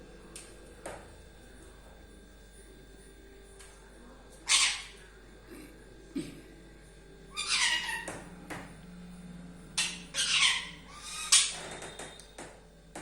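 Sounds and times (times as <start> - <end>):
parrot squawking: 4.4 - 5.0, 7.3 - 8.2, 9.8 - 11.7.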